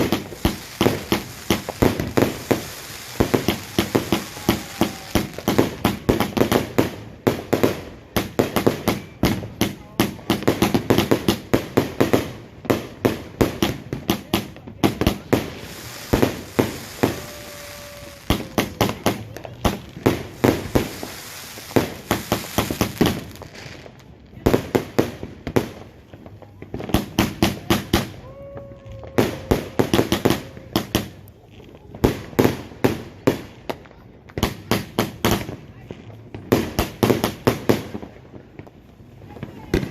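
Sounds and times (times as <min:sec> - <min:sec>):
hissing crackle: 0:00.0 - 0:07.1, 0:14.8 - 0:24.3
firework cake bangs: 0:00.0 - 0:28.2.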